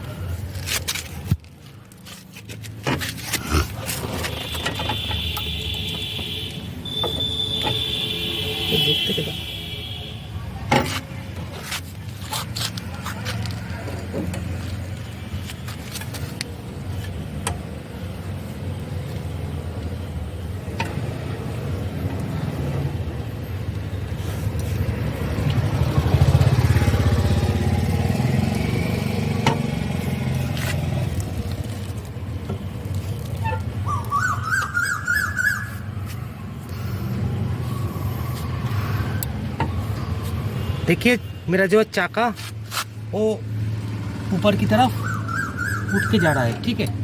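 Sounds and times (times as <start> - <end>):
road traffic rumble: 0.0 - 47.0
car jack clicking and scraping: 2.1 - 6.4, 10.7 - 14.8
vehicle passing: 16.2 - 41.0, 42.3 - 47.0.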